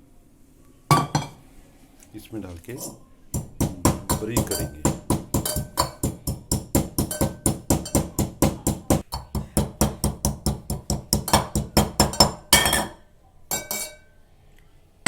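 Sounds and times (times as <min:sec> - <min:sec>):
pestle pounding in mortar: 0:03.4 - 0:12.7.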